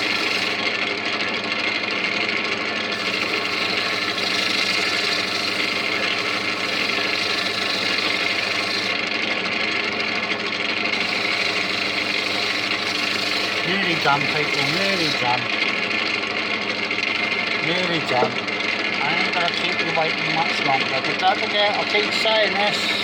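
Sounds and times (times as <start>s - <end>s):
lathe motor humming: 0.0s - 23.0s
hiss of spinning wood: 3.0s - 8.9s, 11.0s - 15.4s.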